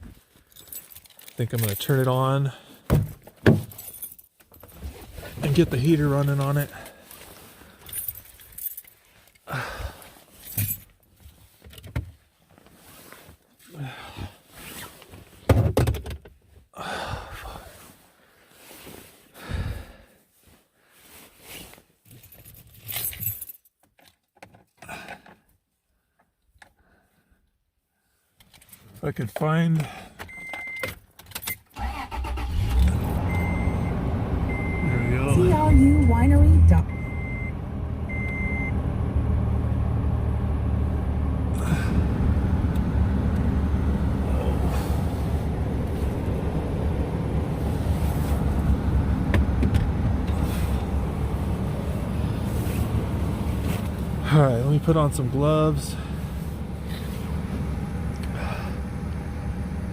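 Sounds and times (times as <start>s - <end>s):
keys jangling: 0.5s - 1.9s, 3.6s - 4.7s, 7.8s - 9.4s, 22.1s - 24.3s
pickup engine idling: 31.9s - 59.9s
short electronic beep: 34.5s - 38.8s.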